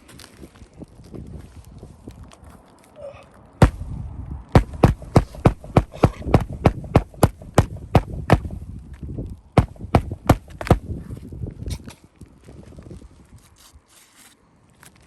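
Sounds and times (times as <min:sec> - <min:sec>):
rapid sharp knocks: 0:04.6 - 0:08.5, 0:09.6 - 0:10.8.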